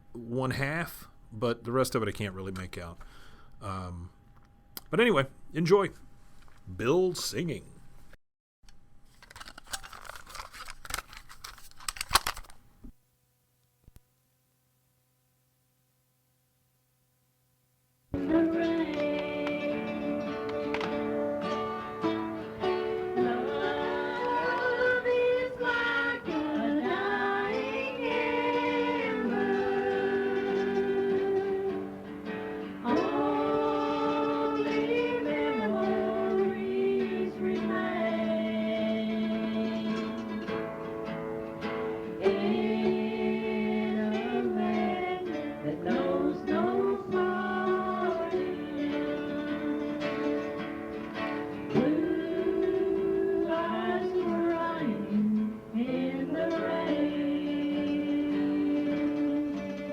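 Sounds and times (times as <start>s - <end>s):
person singing: 18.2s - 32.1s, 32.7s - 40.6s, 42.2s - 50.7s, 51.6s - 59.9s
light guitar: 18.2s - 59.9s
man singing long notes: 32.8s - 40.2s.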